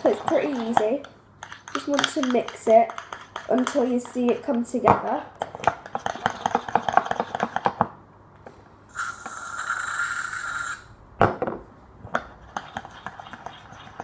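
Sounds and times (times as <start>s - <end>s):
spoon scraping in bowl: 0.0s - 7.8s, 12.4s - 14.0s.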